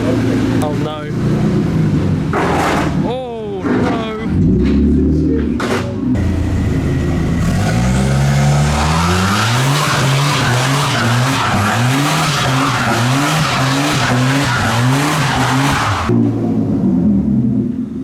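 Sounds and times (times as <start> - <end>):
tyres squealing and skidding: 6.2 - 16.1
car engine revving: 6.2 - 17.1.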